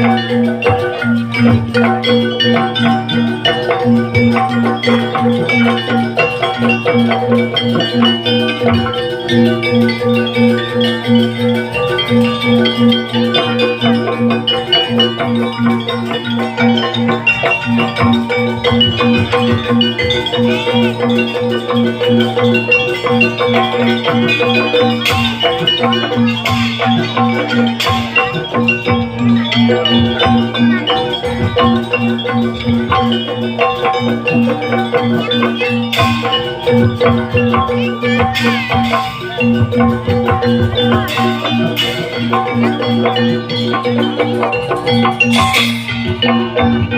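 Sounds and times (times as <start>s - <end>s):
gamelan music: 0.0s - 46.9s
sharp percussion strokes: 0.0s - 46.9s.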